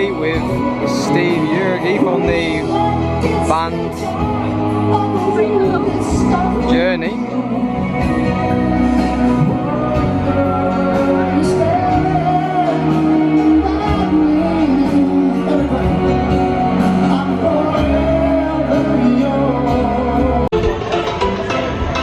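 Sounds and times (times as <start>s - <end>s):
rock band playing live: 0.0s - 22.0s
man singing long notes: 6.4s - 20.6s.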